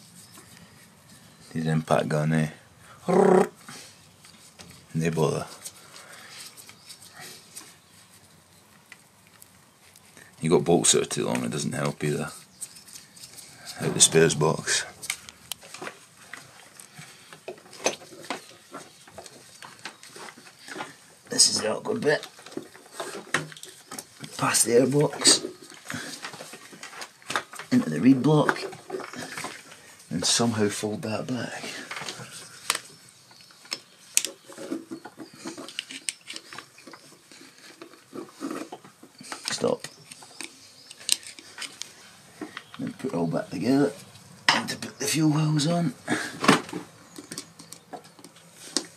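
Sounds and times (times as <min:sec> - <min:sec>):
hands clicking and tapping parts: 0:31.9 - 0:43.2, 0:46.4 - 0:48.9.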